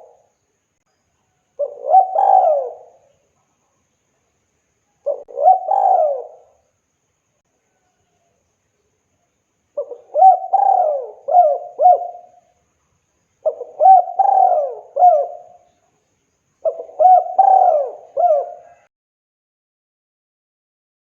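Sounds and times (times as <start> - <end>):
dove cooing: 0.0 - 0.2, 1.6 - 3.1, 5.1 - 6.6, 9.8 - 12.4, 13.4 - 15.7, 16.6 - 18.9.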